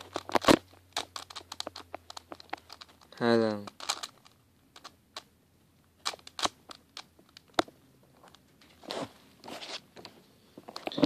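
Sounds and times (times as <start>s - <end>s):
plastic puzzle cube clicks: 0.0s - 5.3s, 6.0s - 7.7s
puzzle cube layers scraping: 0.0s - 5.3s, 6.0s - 7.5s, 8.8s - 9.8s.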